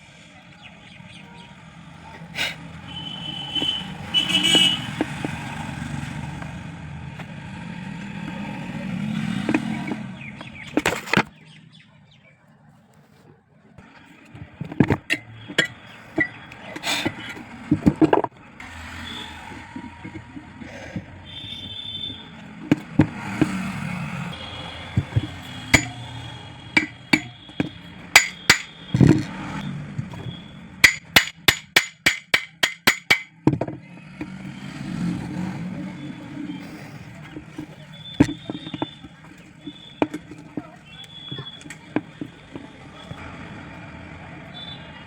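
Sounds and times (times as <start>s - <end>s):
tools knocking on metal: 3.6s - 5.4s, 14.6s - 16.4s, 24.9s - 26.1s, 26.8s - 29.3s, 30.0s - 34.3s
rapid tapping on metal: 24.9s - 26.2s, 26.8s - 29.1s, 30.8s - 33.6s.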